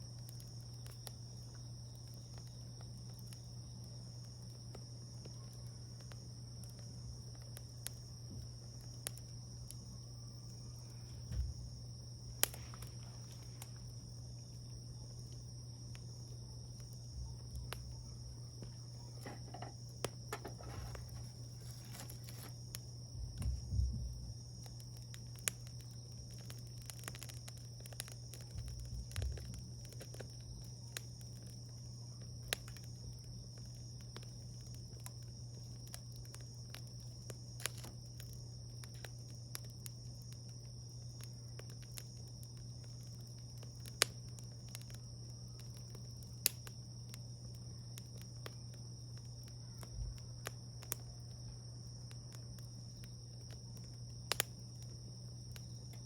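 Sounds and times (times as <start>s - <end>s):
campfire crackling and popping: 0.0s - 10.9s, 11.6s - 56.0s
insects chirring: 0.0s - 56.0s.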